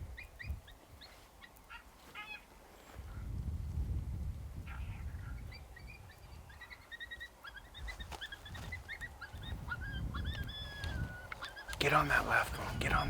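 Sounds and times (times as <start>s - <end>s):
coyotes yipping and barking: 0.0s - 3.0s, 4.6s - 13.0s
low wind rumble: 0.0s - 13.0s.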